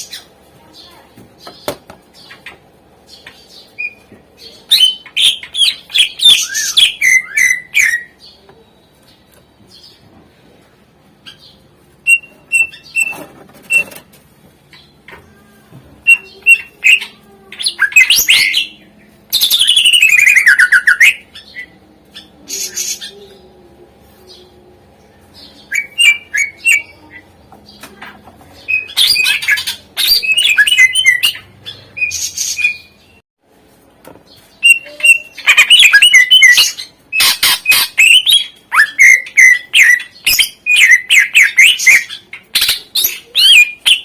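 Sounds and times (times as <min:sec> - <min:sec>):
bird singing chirps and whistles: 0:04.7 - 0:08.2, 0:12.0 - 0:13.9, 0:16.0 - 0:21.7, 0:25.6 - 0:27.0, 0:28.7 - 0:33.2, 0:34.6 - 0:44.0.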